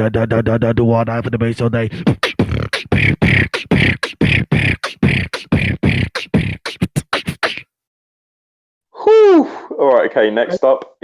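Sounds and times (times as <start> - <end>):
person beatboxing: 0.0 - 7.7.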